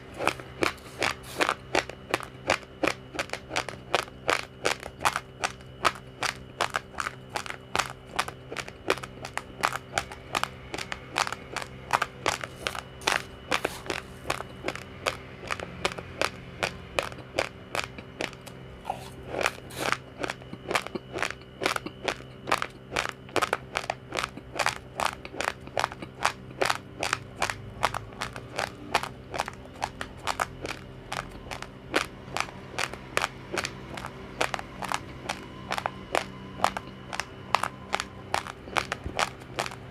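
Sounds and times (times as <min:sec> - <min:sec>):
raw rice crunching while chewing: 0:00.0 - 0:39.9.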